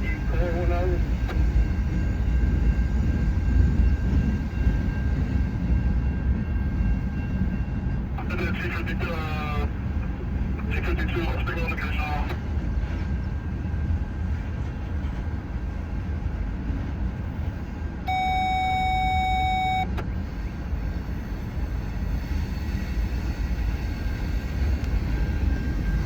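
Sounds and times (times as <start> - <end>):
electronic beep: 18.1 - 19.9.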